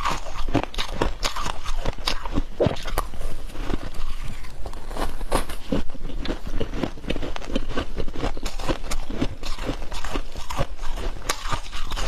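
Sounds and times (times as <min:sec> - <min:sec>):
chewing crunchy frost: 0:00.0 - 0:12.0.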